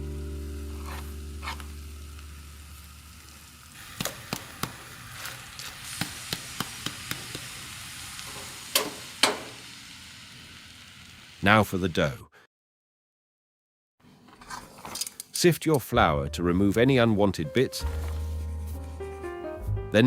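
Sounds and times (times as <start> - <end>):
guitar music: 0.0 - 2.8
faint sizzling hiss: 0.0 - 12.2.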